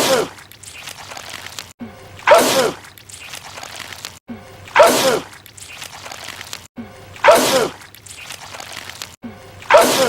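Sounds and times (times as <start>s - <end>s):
man sneezing loudly: 0.0s - 0.3s, 7.2s - 7.8s, 9.7s - 10.0s
wet sloshing noise: 0.0s - 10.0s.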